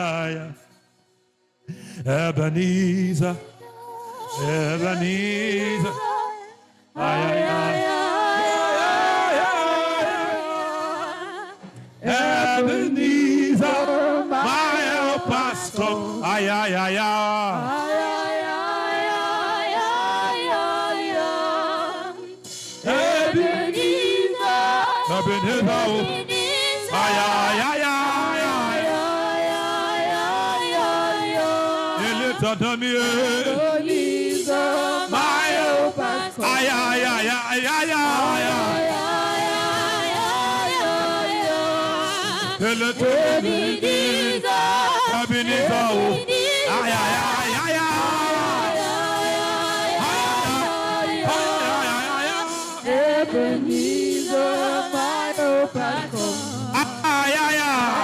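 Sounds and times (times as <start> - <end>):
music: 0.0 - 58.0
person singing chant-like line: 43.1 - 58.0.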